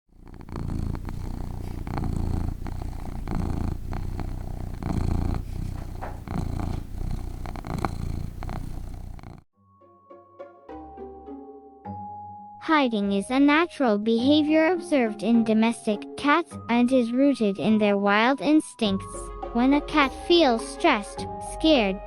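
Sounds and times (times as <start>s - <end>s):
cat purring: 0.0s - 9.5s.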